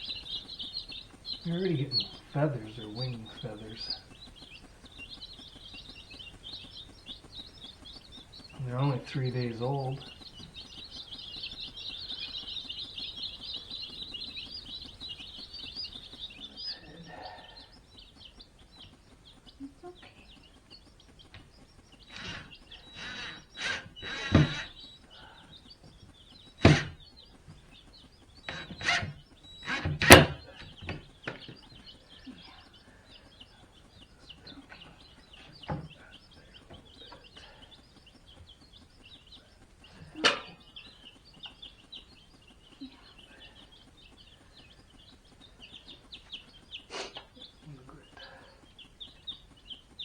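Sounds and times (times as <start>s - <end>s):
baby chicks peeping: 0.0s - 50.0s
knocks and clatters: 25.8s - 31.8s.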